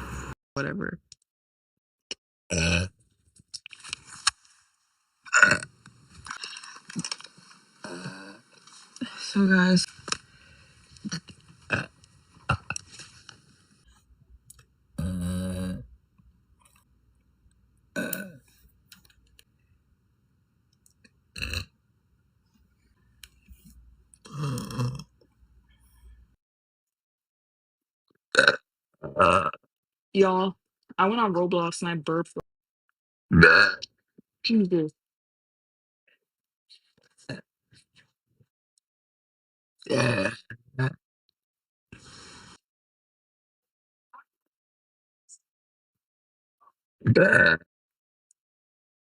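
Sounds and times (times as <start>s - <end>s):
girl burping: 5.3s - 5.6s, 18.0s - 18.4s, 33.4s - 33.8s, 39.9s - 40.9s, 47.1s - 47.6s.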